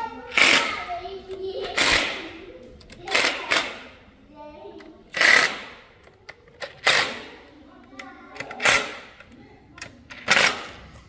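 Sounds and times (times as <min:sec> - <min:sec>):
ratchet wrench clicking: 0:05.1 - 0:07.3.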